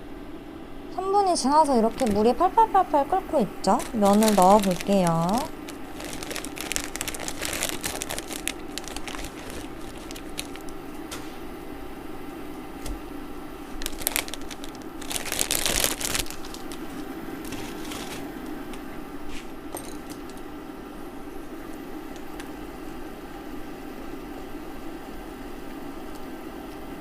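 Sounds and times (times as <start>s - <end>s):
steady low hum: 0.0s - 27.0s
plastic packet crinkling: 1.9s - 2.7s, 3.6s - 10.8s, 13.7s - 18.3s.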